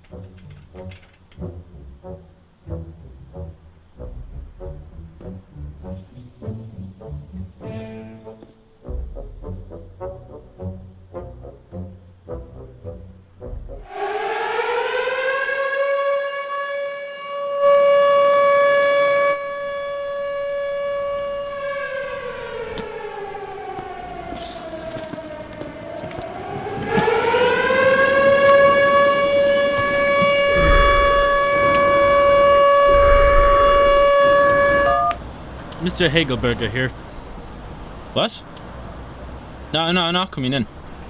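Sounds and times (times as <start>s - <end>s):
air-raid siren wailing: 9.5s - 36.0s.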